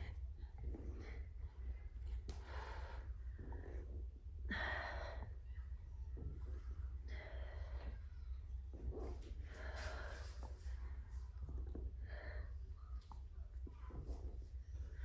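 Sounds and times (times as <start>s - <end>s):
woman breathing heavily: 0.0s - 5.7s, 7.0s - 8.5s, 9.3s - 11.0s, 11.8s - 12.9s
low steady hum: 0.0s - 15.0s.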